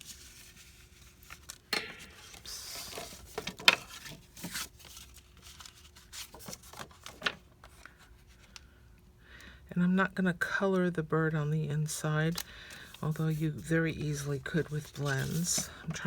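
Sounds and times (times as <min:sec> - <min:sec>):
paper rustling and sliding: 0:00.0 - 0:08.5, 0:12.3 - 0:16.0
tools tapping and clicking: 0:01.7 - 0:02.5.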